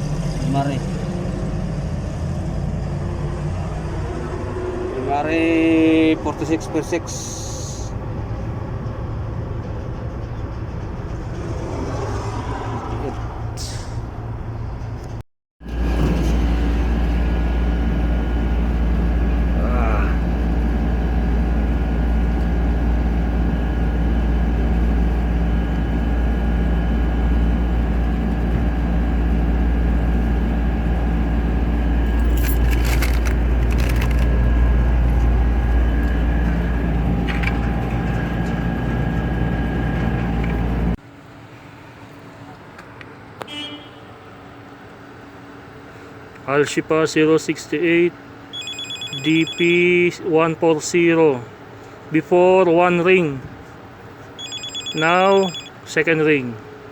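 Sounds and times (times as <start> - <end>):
motor vehicle engine rumble: 7.2 - 41.0.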